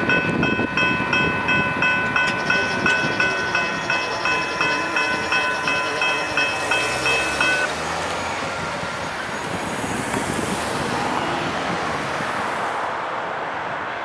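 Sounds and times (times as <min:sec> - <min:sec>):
railroad crossing bell: 0:00.0 - 0:09.7
road traffic: 0:00.0 - 0:14.0.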